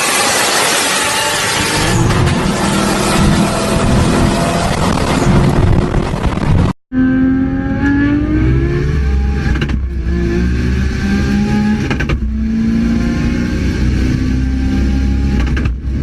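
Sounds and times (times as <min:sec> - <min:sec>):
loud rush of noise: 0:00.0 - 0:06.8
car engine revving: 0:00.0 - 0:16.0.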